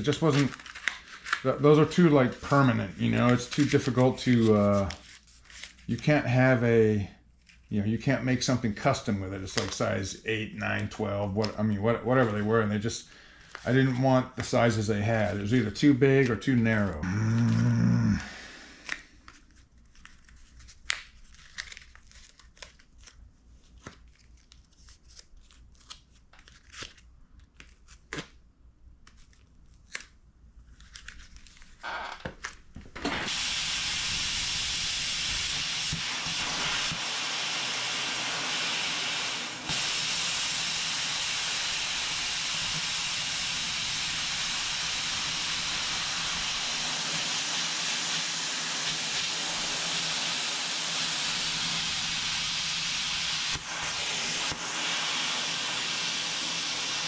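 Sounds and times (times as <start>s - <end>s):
loud steady hiss: 33.0s - 57.0s.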